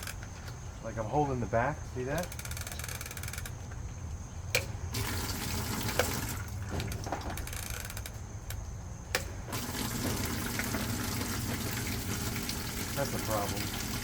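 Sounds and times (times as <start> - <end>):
sharp clicks: 2.1 - 3.8
washing machine running: 4.9 - 7.3, 9.4 - 14.0
water pouring into tub: 5.0 - 6.7, 9.5 - 14.0.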